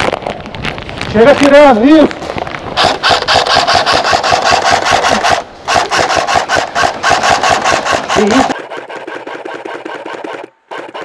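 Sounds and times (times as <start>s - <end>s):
airsoft gun firing full-auto: 2.8s - 8.6s.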